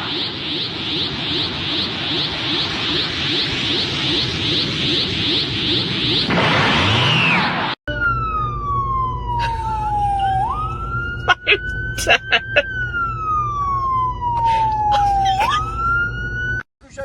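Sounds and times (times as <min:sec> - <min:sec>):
noisy whoosh: 0:00.0 - 0:07.8
siren wailing: 0:00.0 - 0:16.7
steady low hum: 0:08.3 - 0:16.4.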